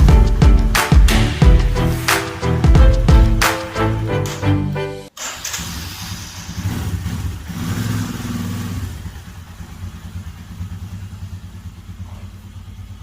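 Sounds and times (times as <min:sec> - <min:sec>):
motorcycle engine revving: 0:05.2 - 0:13.0.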